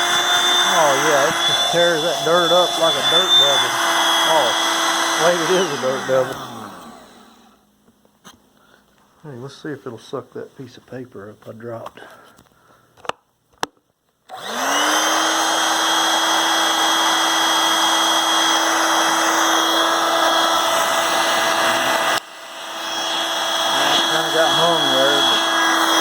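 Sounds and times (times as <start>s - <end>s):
vacuum motor whine: 0.0s - 7.6s, 14.3s - 26.0s.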